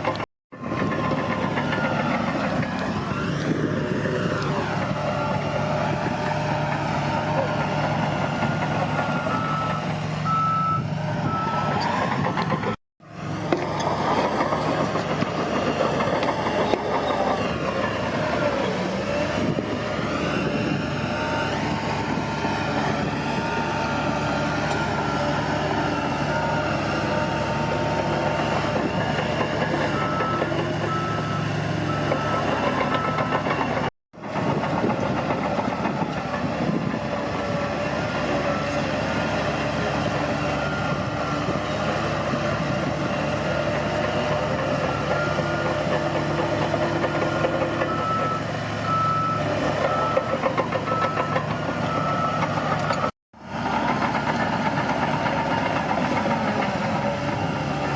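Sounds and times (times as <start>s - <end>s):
bulldozer diesel engine: 0.0s - 57.9s
reversing alarm beeping: 0.6s - 5.4s, 7.0s - 12.8s, 24.7s - 33.9s, 39.9s - 42.0s, 47.1s - 53.1s.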